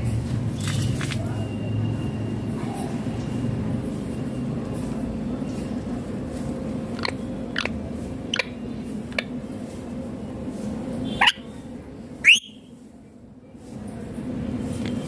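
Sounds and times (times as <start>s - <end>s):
parakeet squawking: 7.0s - 8.6s, 11.1s - 11.5s.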